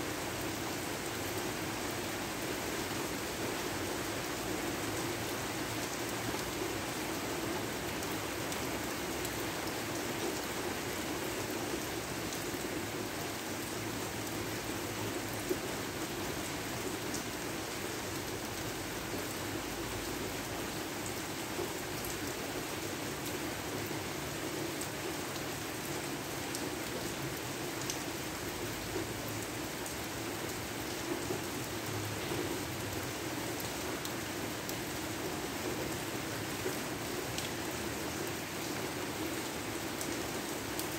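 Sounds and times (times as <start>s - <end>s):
steady rain hissing: 0.0s - 40.9s.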